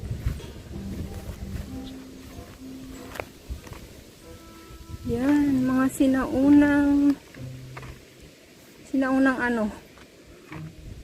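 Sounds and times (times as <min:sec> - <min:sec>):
background music with held notes: 0:00.0 - 0:08.7.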